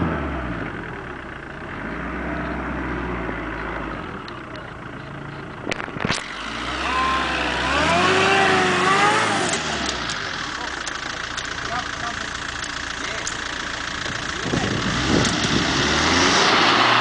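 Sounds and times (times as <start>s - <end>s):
engine revving under load: 6.1s - 10.7s, 14.3s - 17.0s.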